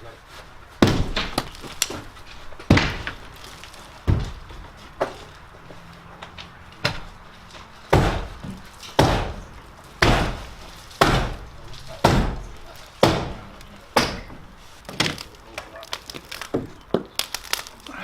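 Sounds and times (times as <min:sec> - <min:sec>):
sledgehammer striking wood: 0:00.8 - 0:05.3, 0:07.9 - 0:15.3.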